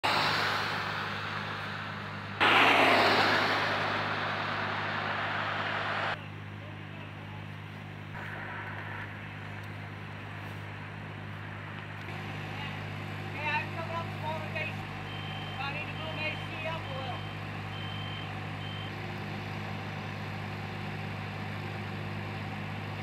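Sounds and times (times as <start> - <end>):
rushing noise: 0.0 - 6.2, 8.2 - 12.3
construction machinery engine hum: 0.0 - 23.0.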